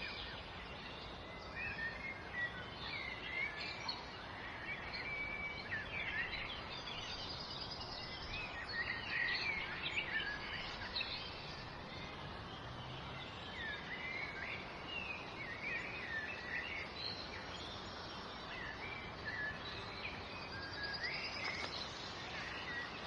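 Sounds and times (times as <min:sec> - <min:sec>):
songbirds chirping and singing: 0:00.0 - 0:23.0
steady background hiss: 0:00.0 - 0:23.0
whistled bird notes: 0:13.4 - 0:23.0.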